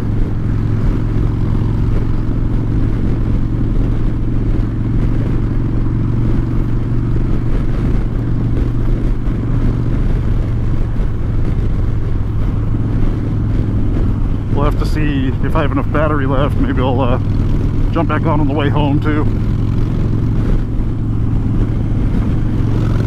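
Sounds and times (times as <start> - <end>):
motorcycle engine cruising: 0.0 - 23.0.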